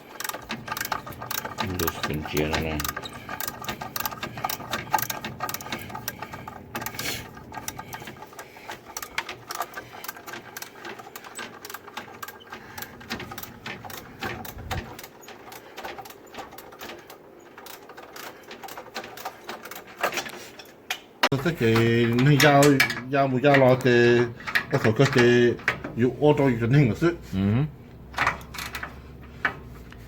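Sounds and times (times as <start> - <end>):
ratchet wrench clicking: 0.1 - 8.4.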